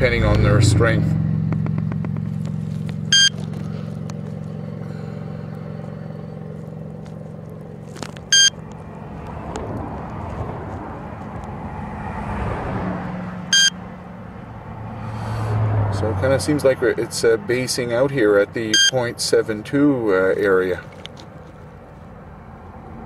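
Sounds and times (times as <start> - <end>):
passing car rush: 0.0 - 23.0
vehicle low hum: 0.0 - 23.0
high electronic beeps: 3.1 - 3.4, 8.3 - 8.6, 13.5 - 13.8.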